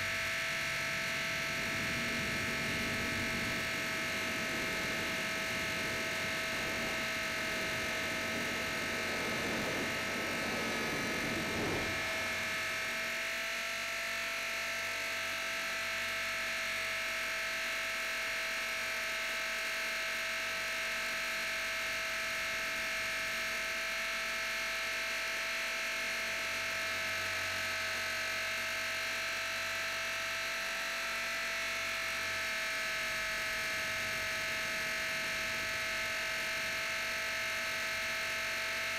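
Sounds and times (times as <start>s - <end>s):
model helicopter motor whine: 0.0s - 38.9s
rushing air: 1.0s - 12.8s.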